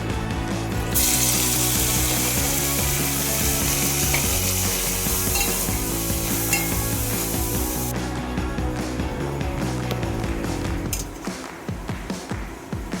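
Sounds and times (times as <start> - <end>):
background music: 0.0 - 13.0
food sizzling in a pan: 0.8 - 7.9.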